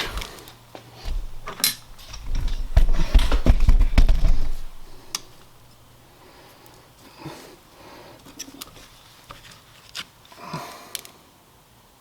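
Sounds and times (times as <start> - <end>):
dull heavy thumps: 1.0 - 5.1.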